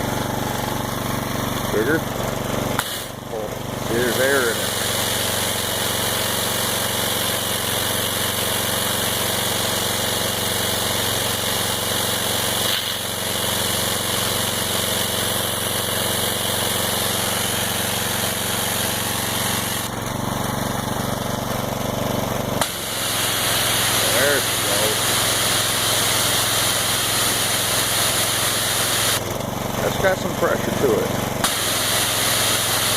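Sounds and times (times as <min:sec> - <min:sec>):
pressure washer engine running: 0:00.0 - 0:32.9
water spraying hiss: 0:04.1 - 0:09.2, 0:10.4 - 0:15.1, 0:22.6 - 0:29.2, 0:31.4 - 0:32.9.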